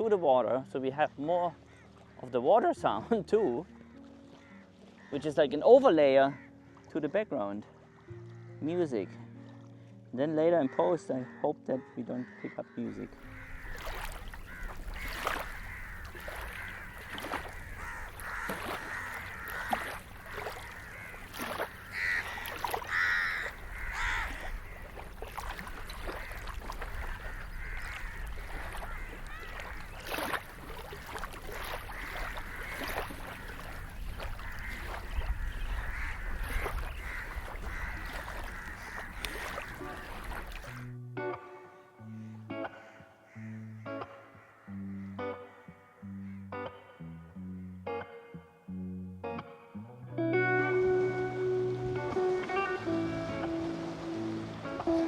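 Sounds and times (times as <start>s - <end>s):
water lapping and splashing: 1.6s - 2.3s, 2.9s - 5.2s, 13.1s - 40.9s, 52.0s - 55.0s
birds calling: 11.8s - 40.8s.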